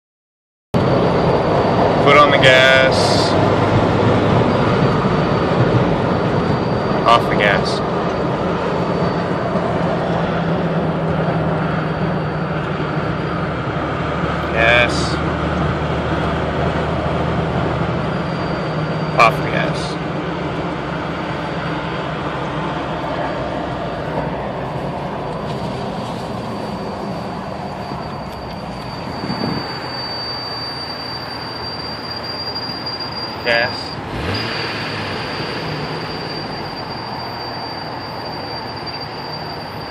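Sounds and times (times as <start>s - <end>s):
road and drivetrain noise: 0.8s - 39.9s
thin high whistle: 26.4s - 39.9s.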